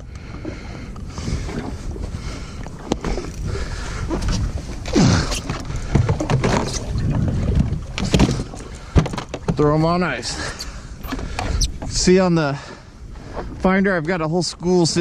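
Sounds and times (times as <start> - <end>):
wind buffeting microphone: 0.0 - 15.0
water sloshing: 0.2 - 13.6
knocks from fish being handled: 8.0 - 9.6.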